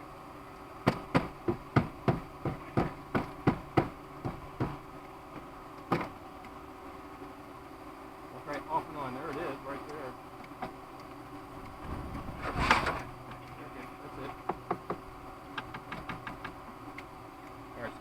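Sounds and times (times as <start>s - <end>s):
hammer tapping on metal: 0.8s - 4.8s, 14.4s - 15.0s, 15.6s - 16.6s.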